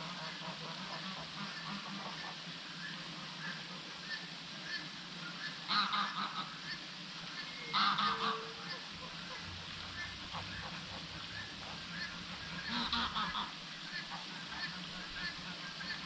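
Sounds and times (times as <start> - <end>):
harsh honking bird calls: 7.6 - 8.8.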